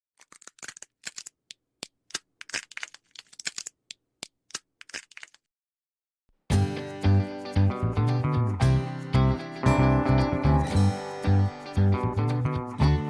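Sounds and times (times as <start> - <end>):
squirrels cracking nuts: 0.2 - 5.5
acoustic guitar music: 6.5 - 13.0.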